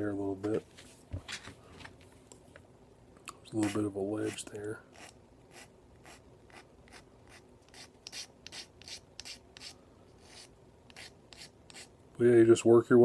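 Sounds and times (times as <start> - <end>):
hand file rasping on metal: 6.5 - 11.9.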